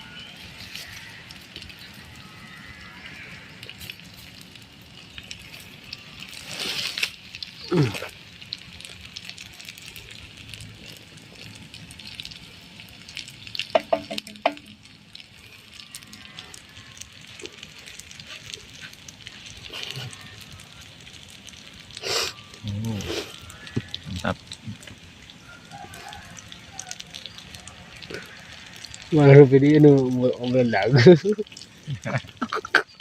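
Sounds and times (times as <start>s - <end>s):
food sizzling in a pan: 0.0s - 33.0s
burst of noise: 22.0s - 24.9s.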